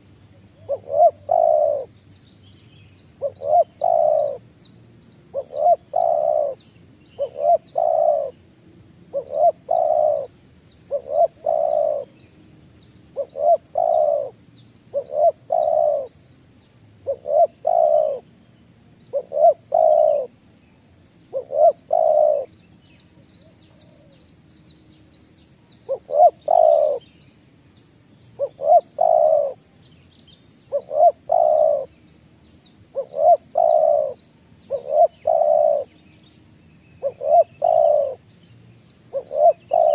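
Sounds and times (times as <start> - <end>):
bird calling: 0.0 - 8.4, 9.1 - 12.4, 13.1 - 16.3, 17.0 - 18.4, 19.1 - 20.4, 21.3 - 24.6, 25.2 - 27.3, 28.2 - 29.7, 30.3 - 39.9
high chirps of small birds: 9.2 - 39.9.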